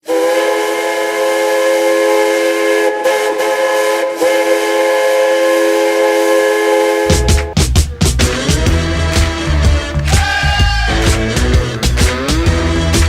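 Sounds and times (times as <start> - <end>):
goal horn chord: 0.1 - 10.0.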